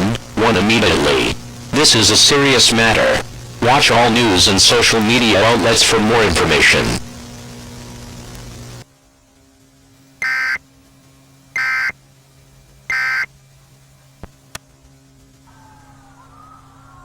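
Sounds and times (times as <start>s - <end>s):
low hum: 0.0s - 17.0s
screechy digital data bursts: 10.2s - 10.6s, 11.6s - 12.0s, 12.9s - 13.3s
faint siren wailing: 10.2s - 10.7s, 11.5s - 12.0s, 12.9s - 13.3s, 15.4s - 17.0s.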